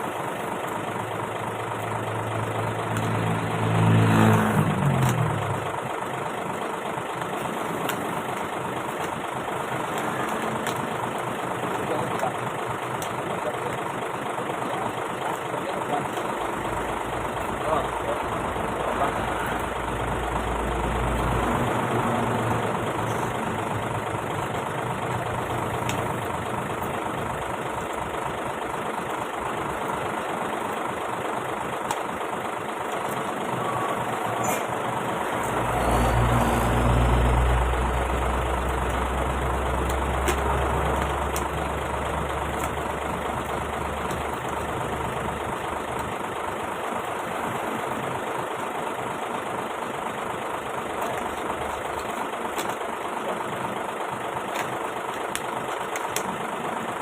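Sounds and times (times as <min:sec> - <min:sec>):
diesel truck engine idling: 0:00.0 - 0:57.0.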